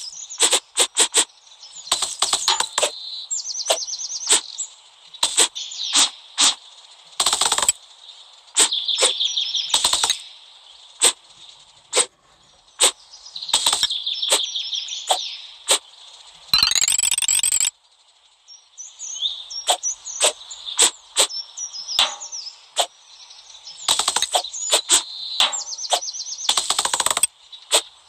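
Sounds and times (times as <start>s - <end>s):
blade slicing with sharp cracks: 0.4s - 1.3s, 5.2s - 6.6s, 11.0s - 11.2s.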